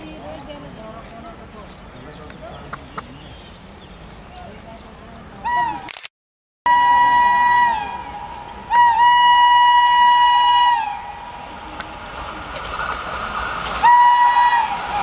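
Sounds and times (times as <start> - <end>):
locomotive horn blasts: 6.7 - 11.2, 13.8 - 15.0.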